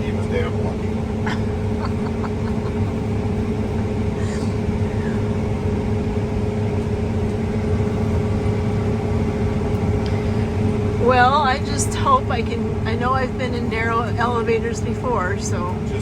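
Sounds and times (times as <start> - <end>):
vehicle engine drone from inside cab: 0.0 - 16.0.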